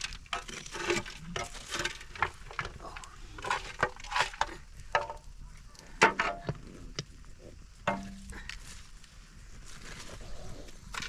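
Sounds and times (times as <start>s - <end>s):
objects knocking and clattering: 0.0s - 5.3s, 6.0s - 6.7s, 7.8s - 8.4s.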